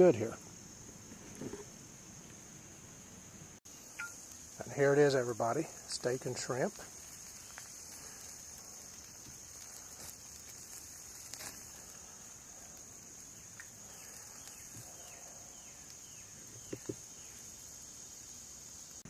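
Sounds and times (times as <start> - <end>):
campfire wood popping: 0.0 - 2.8, 3.6 - 19.0
insect chorus drone: 0.0 - 19.0.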